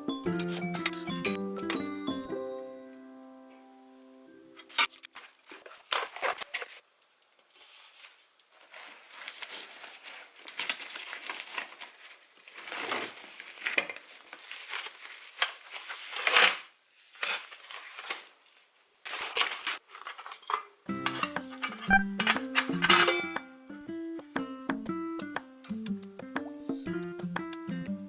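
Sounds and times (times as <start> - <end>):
plastic packaging crinkling: 4.8 - 6.9, 7.6 - 23.0.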